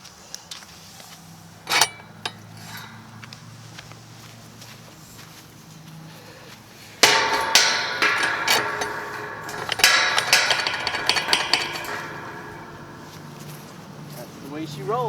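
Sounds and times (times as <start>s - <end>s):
hammer striking ringing metal: 7.0s - 15.0s.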